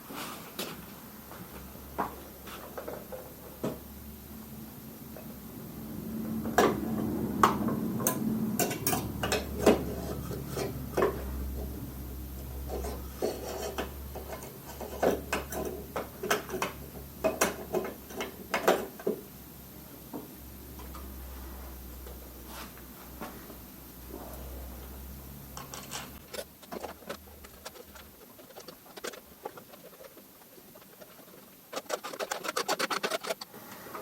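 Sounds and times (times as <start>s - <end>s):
metal scraping and rubbing: 26.2s - 33.6s.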